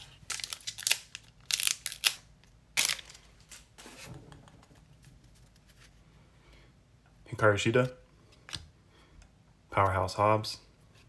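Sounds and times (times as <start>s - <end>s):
foil wrapper and cards crinkling: 0.0s - 2.2s, 2.8s - 3.7s.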